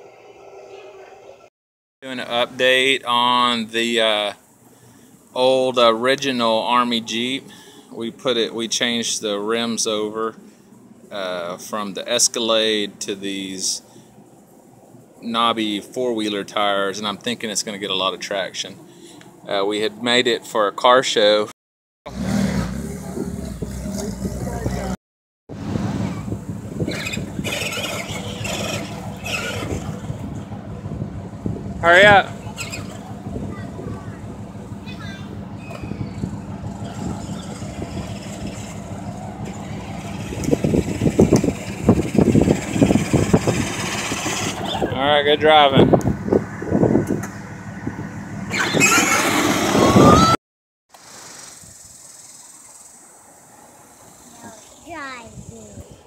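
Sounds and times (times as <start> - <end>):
faint steady hiss: 2.1 - 21.4
jeep engine rumble: 22.1 - 50.4
rattling and scraping: 26.8 - 44.7
toy ride-on car whining: 26.9 - 29.9.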